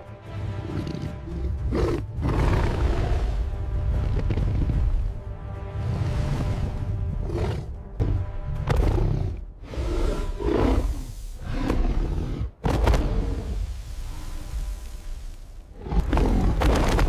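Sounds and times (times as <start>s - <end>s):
dramatic film score music: 0.0s - 17.0s
animal roars: 8.7s - 13.5s, 15.7s - 17.0s.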